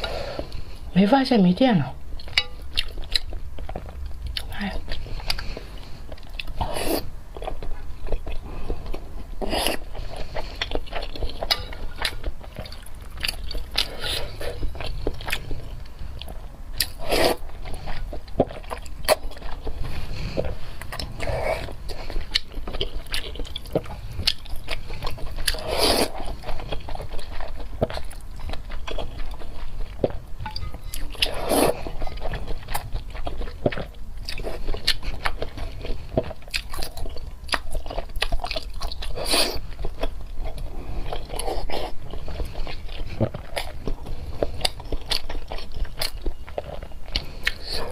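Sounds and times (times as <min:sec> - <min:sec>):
wet eating sounds: 0:02.2 - 0:47.9
person biting and chewing: 0:20.4 - 0:29.4.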